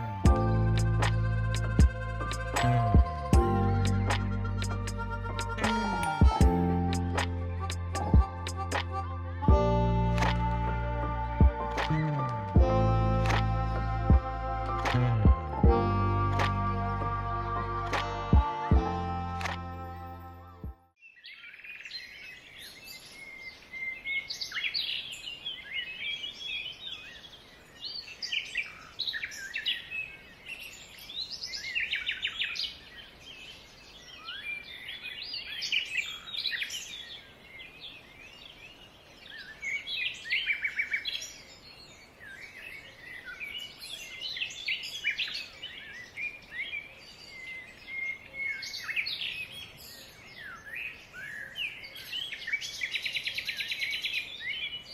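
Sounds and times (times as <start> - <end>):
songbirds singing and chirping: 21.0 - 54.9.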